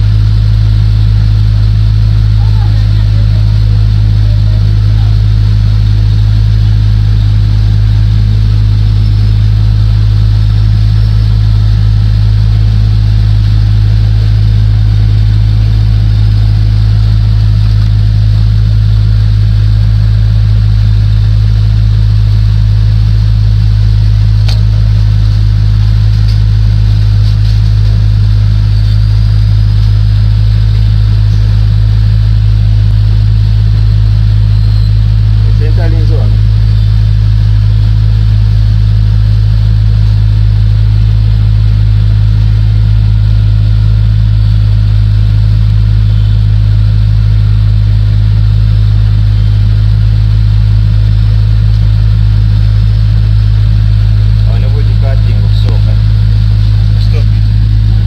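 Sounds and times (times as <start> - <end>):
loud steady low hum: 0.0 - 58.0.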